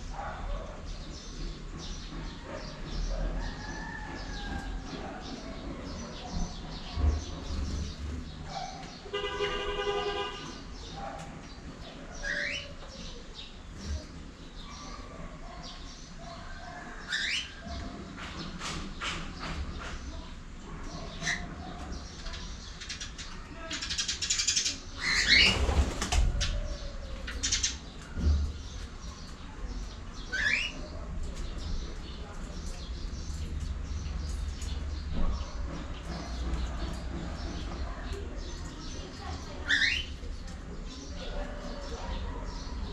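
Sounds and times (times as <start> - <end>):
birds clicking and rattling: 0.1 - 42.9
steady honk-like tone: 9.1 - 10.6
cockatiels chirping: 39.6 - 40.1.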